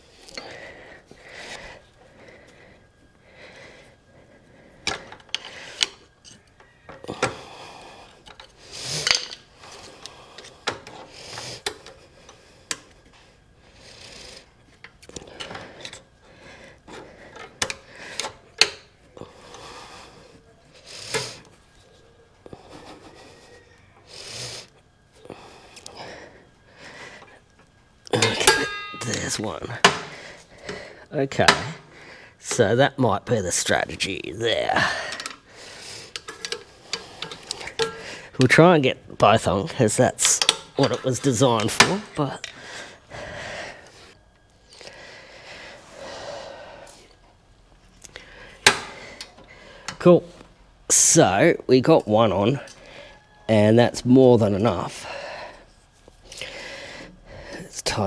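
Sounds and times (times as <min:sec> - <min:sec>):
person breathing hard: 0:00.0 - 0:29.0, 0:29.8 - 0:32.5, 0:34.7 - 0:38.4, 0:42.3 - 0:50.0, 0:52.6 - 0:53.5, 0:54.9 - 0:57.8
spring snapping with metallic clank: 0:28.1 - 0:30.2, 0:31.4 - 0:31.9, 0:36.1 - 0:38.6, 0:40.2 - 0:42.6, 0:48.6 - 0:50.0.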